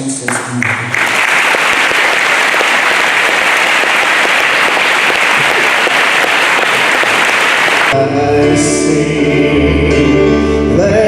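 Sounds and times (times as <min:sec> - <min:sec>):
audience applauding: 0:00.2 - 0:08.0.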